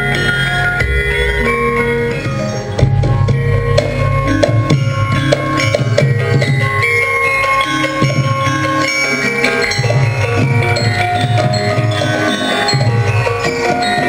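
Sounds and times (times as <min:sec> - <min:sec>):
metallophones ringing: 0:00.0 - 0:14.0
low drum pulse: 0:00.8 - 0:06.6.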